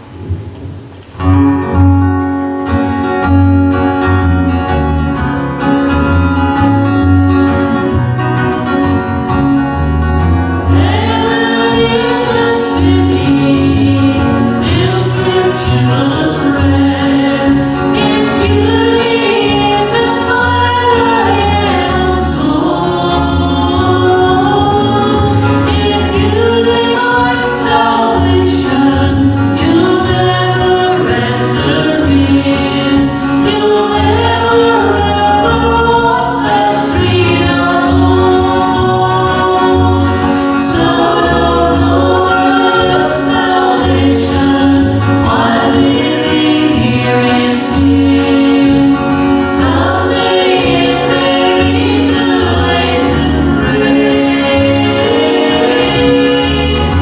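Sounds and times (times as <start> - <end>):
rhythmic bass accompaniment: 0.2 - 57.0
group singing gospel: 6.0 - 57.0.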